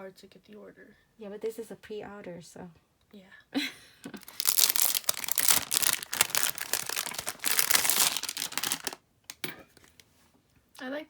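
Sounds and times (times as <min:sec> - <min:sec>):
packaging crinkling and tearing: 0:04.2 - 0:09.0.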